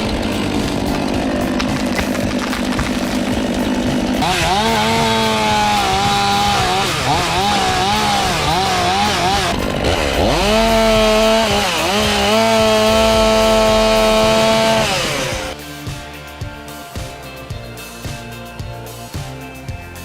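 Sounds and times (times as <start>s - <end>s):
chainsaw cutting wood: 0.0s - 16.1s.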